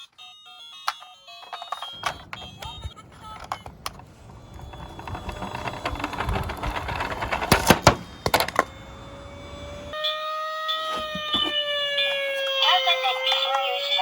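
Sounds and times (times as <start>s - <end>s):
toy electronic siren: 0.0s - 14.0s
toy cars rolling and rattling: 0.9s - 10.0s
loud plastic clacks: 1.5s - 8.8s.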